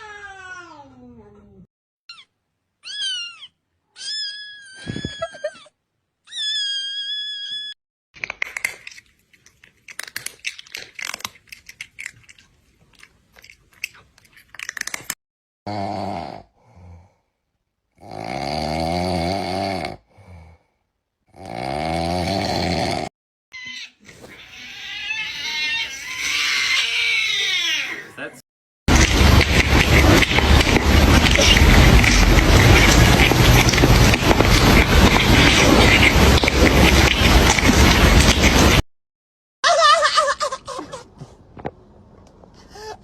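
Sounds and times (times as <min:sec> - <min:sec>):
cat crying low and rough: 0:00.0 - 0:07.8, 0:23.6 - 0:28.2
cat chewing crunchily: 0:08.2 - 0:15.1, 0:28.9 - 0:38.8
cat meowing: 0:23.6 - 0:28.2.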